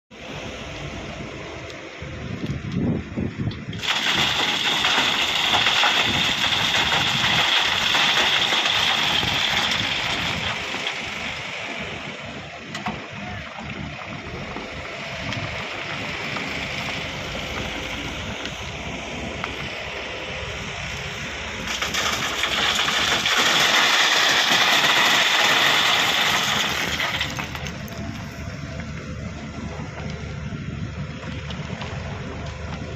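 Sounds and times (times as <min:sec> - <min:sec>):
excavator diesel engine under load: 0:00.2 - 0:32.9
digging crushed stone: 0:21.7 - 0:28.0.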